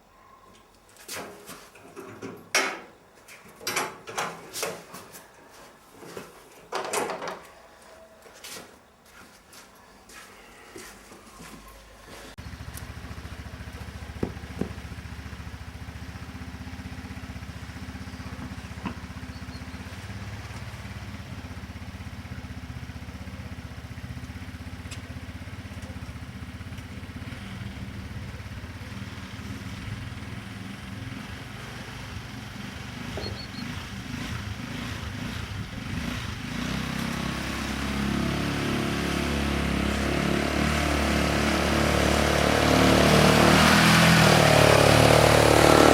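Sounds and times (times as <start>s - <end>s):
atv engine running: 12.4s - 45.9s.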